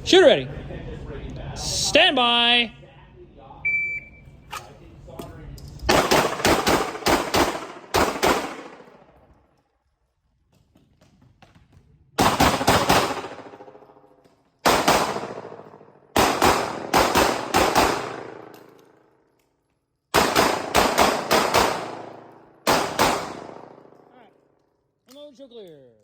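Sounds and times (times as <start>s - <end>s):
pistol shots echoing: 5.9s - 9.2s, 12.2s - 14.0s, 14.6s - 18.9s, 20.1s - 24.1s.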